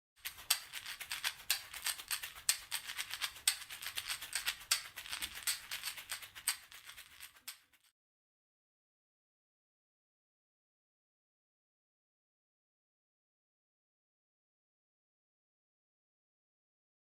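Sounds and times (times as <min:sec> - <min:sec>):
dry rattling shake: 0:00.2 - 0:07.9.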